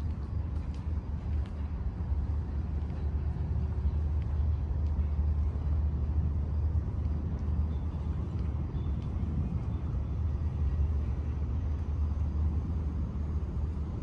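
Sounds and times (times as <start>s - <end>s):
city ambience rumble: 0.0s - 14.0s.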